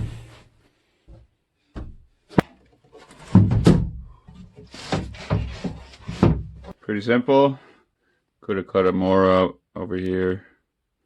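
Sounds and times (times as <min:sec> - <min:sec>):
box lid scraping and knocking: 0:04.3 - 0:06.7.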